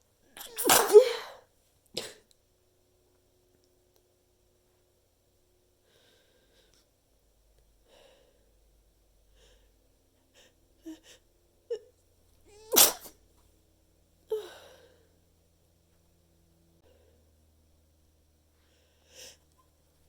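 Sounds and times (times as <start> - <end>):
muffled sneeze: 0.4 - 1.4, 2.0 - 2.3, 12.5 - 13.2.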